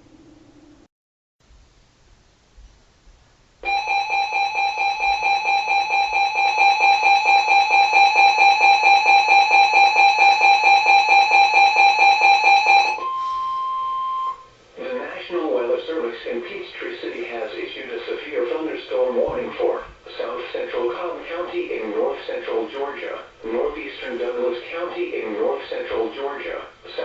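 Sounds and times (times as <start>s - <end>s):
steady alarm tone: 3.6s - 14.6s
rapidly pulsing electronic beep: 3.7s - 14.4s.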